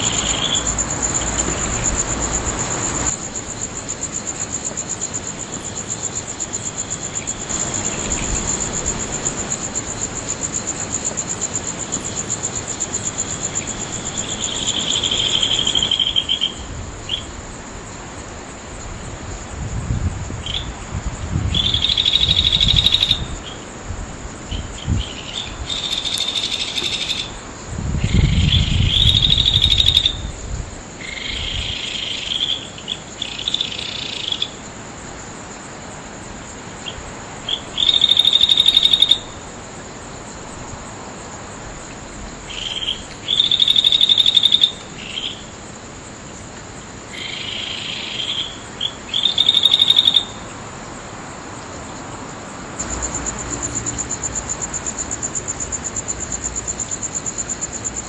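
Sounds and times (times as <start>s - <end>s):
crickets trilling: 0.0s - 58.0s
steady high insect hum: 0.0s - 58.0s.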